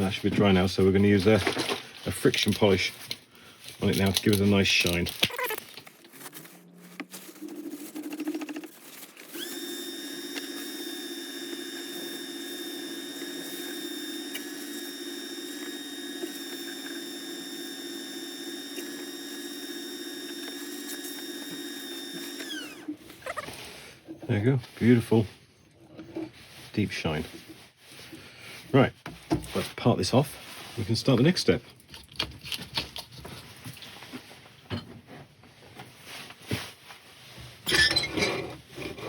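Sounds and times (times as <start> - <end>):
wood lathe whining: 7.6 - 23.6.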